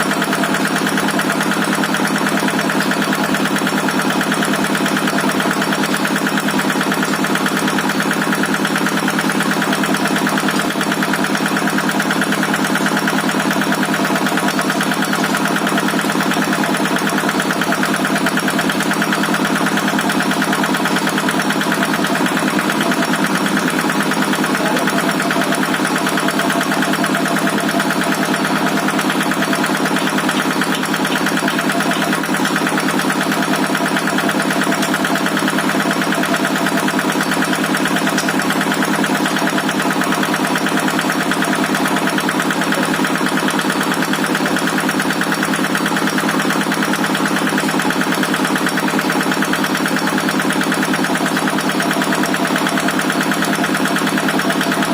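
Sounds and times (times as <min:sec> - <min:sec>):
diesel engine chugging: 0:00.0 - 0:54.9.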